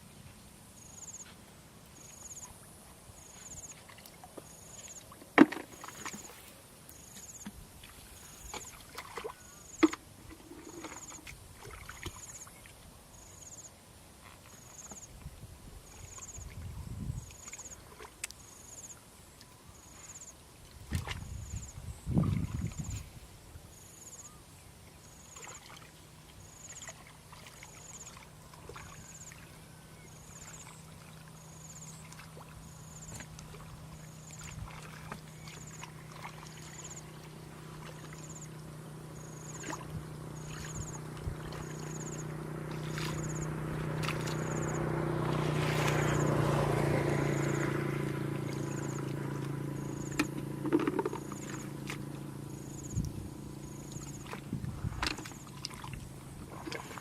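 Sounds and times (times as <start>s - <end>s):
small engine passing: 27.6s - 57.0s.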